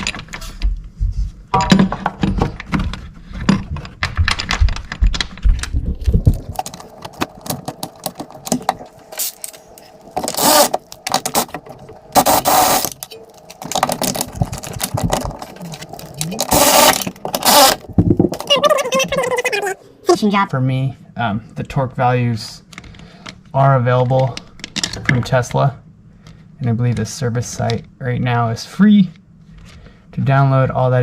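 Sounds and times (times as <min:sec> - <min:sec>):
harsh bursts of noise: 0:10.2 - 0:13.0, 0:13.6 - 0:19.7.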